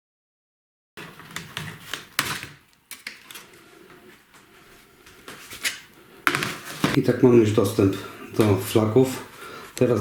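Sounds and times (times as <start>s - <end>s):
plastic clips clicking and cracking: 1.0s - 3.5s
plastic scraping and handling: 1.0s - 4.2s, 5.1s - 7.0s.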